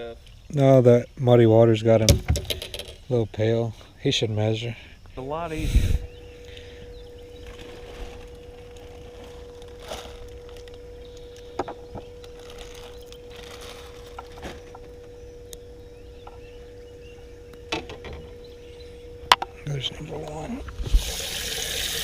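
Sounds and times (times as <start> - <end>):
knocks and clicks of gear: 2.0 - 3.0, 10.7 - 12.3, 14.1 - 18.4, 19.2 - 19.6
small electric motor humming: 5.5 - 22.0.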